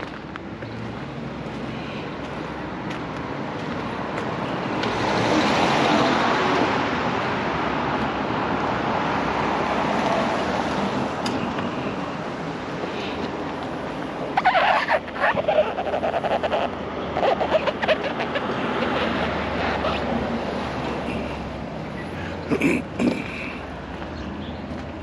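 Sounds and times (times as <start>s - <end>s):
vehicle tyres rushing past: 3.1s - 22.2s.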